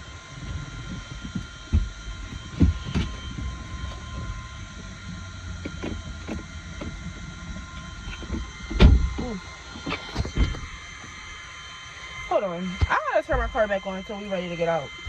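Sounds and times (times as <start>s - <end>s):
steady low hum: 0.0s - 15.0s
knocks and rustling inside car: 0.4s - 4.9s, 5.6s - 10.9s
loud thump: 8.7s - 9.3s.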